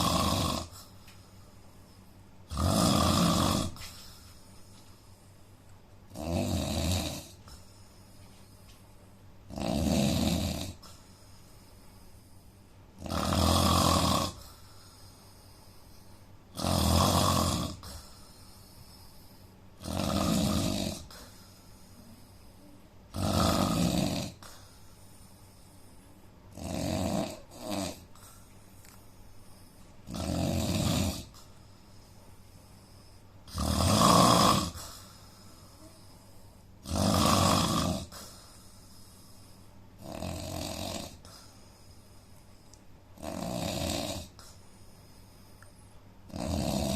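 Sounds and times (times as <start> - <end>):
man snoring: 0.0 - 0.9, 2.5 - 3.9, 6.1 - 7.4, 9.5 - 10.9, 13.0 - 14.5, 16.5 - 18.2, 19.8 - 21.3, 23.1 - 24.5, 26.5 - 28.2, 30.1 - 31.4, 33.5 - 35.1, 36.8 - 38.4, 40.0 - 41.5, 43.2 - 44.4, 46.3 - 46.9
short snorts: 0.0 - 0.9, 2.5 - 4.8, 13.0 - 22.4, 23.1 - 25.9, 26.5 - 31.7, 32.8 - 42.1, 43.2 - 46.9
quiet breathing: 0.0 - 2.4, 3.5 - 6.0, 7.0 - 9.3, 10.6 - 13.0, 14.2 - 16.6, 17.4 - 19.8, 20.6 - 23.6, 24.3 - 26.5, 27.3 - 30.2, 31.2 - 33.5, 34.6 - 36.8, 38.0 - 43.3, 44.2 - 46.3.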